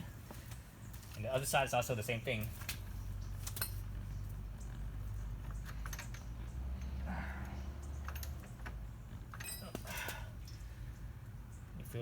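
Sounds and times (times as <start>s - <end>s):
metallic clicks of tools and parts: 5.5s - 7.0s.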